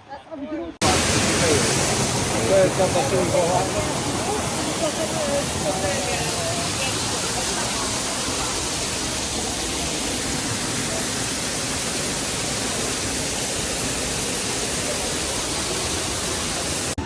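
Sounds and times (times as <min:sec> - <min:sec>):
waterfall rushing: 0:00.8 - 0:17.0.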